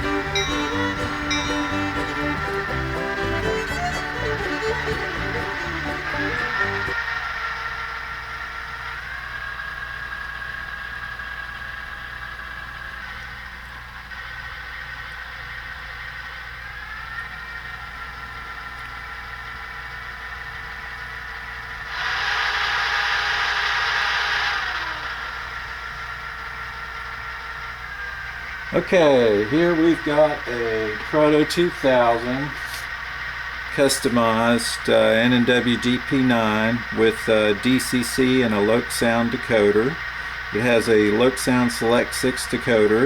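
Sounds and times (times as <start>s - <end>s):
model train diesel engine sound: 0.0s - 43.0s
loud noisy burst: 21.9s - 26.3s.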